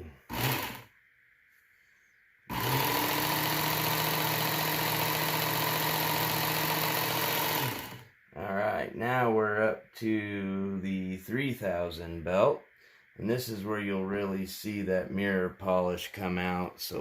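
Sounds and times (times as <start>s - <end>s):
belt sharpener motor whining: 0.0s - 0.9s, 2.5s - 8.1s.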